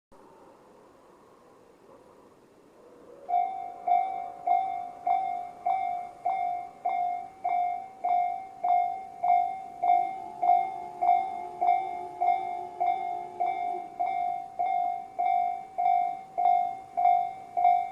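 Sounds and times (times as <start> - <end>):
electronic crossing warning bell: 3.2 - 17.9
second bell at different pitch: 3.3 - 17.9.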